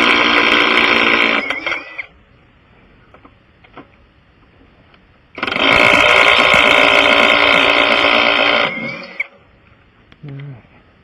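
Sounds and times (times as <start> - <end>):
impact wrench running: 0.0 - 1.8, 5.4 - 9.2.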